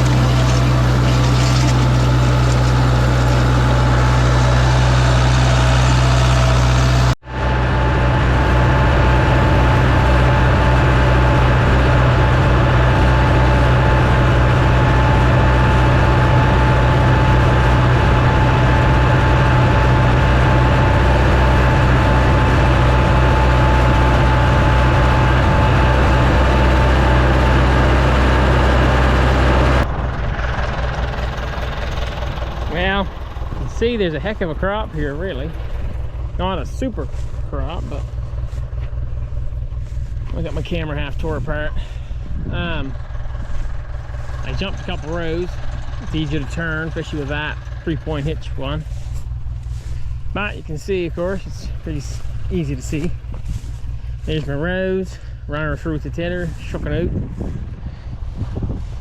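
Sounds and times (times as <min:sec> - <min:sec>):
tractor engine running: 0:00.0 - 0:59.0.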